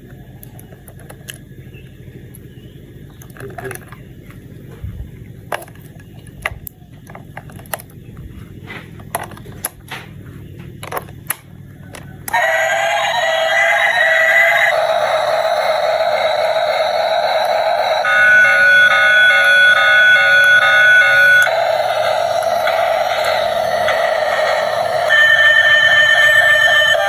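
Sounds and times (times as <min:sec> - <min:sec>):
toy electronic sound effects and tune: 0:12.3 - 0:27.0.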